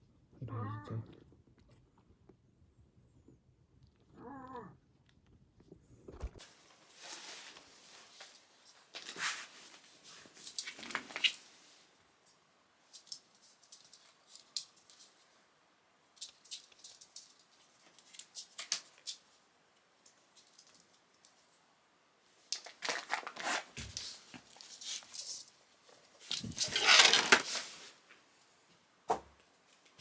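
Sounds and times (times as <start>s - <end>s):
crinkly rustling: 6.4s - 15.4s, 16.1s - 21.6s, 22.2s - 28.2s.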